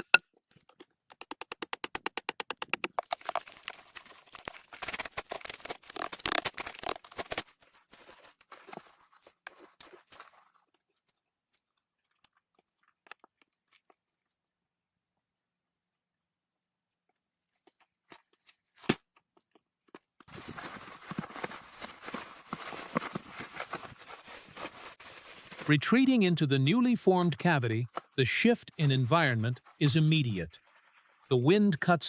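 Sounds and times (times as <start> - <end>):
crunching and rustling: 3.0 - 14.4, 20.2 - 26.2.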